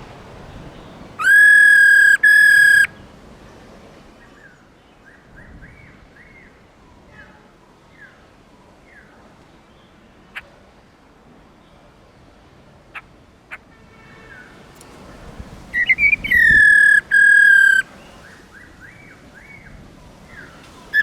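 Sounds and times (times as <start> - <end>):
faint short bird calls: 1.2 - 2.9, 15.8 - 17.8
loud whistle tone: 1.2 - 2.9, 15.8 - 17.8.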